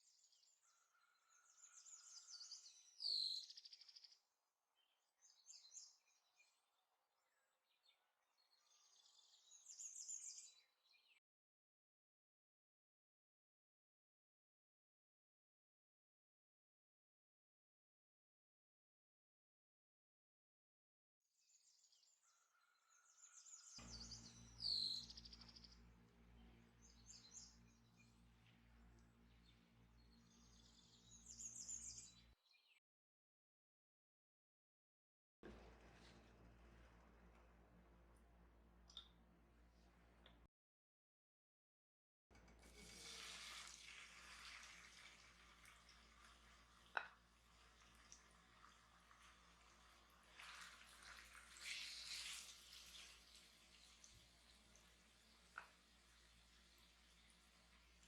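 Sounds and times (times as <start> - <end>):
birds chirping and whistling: 23.8 - 25.7.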